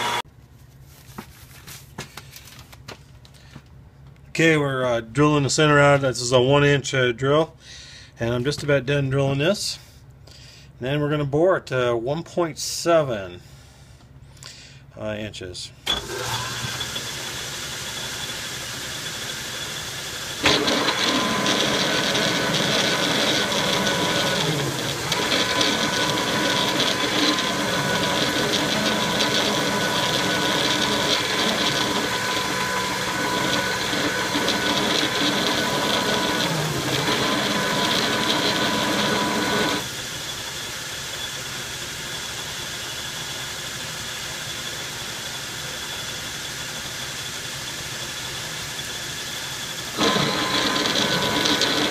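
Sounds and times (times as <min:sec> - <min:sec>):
drill cutting metal whine: 0:00.0 - 0:00.2, 0:15.9 - 0:51.9
metal lathe running: 0:00.0 - 0:00.2, 0:15.9 - 0:39.9, 0:44.2 - 0:51.9.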